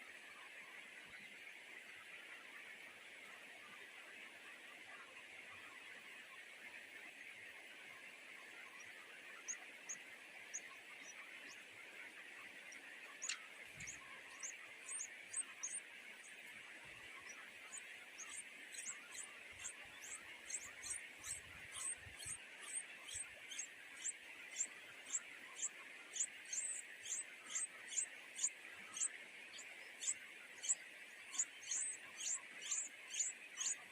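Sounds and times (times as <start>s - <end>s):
high thin bird chirps: 13.2s - 15.8s.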